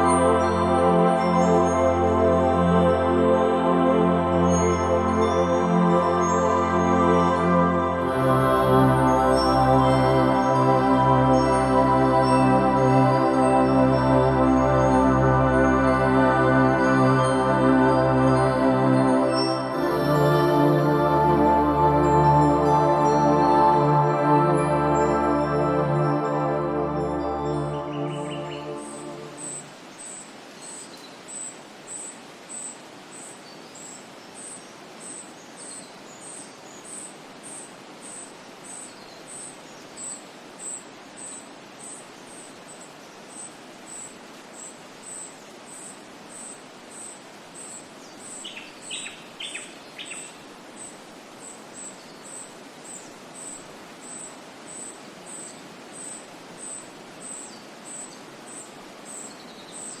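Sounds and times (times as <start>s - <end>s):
background hiss: 0.0s - 60.0s
bird notes: 4.5s - 30.2s.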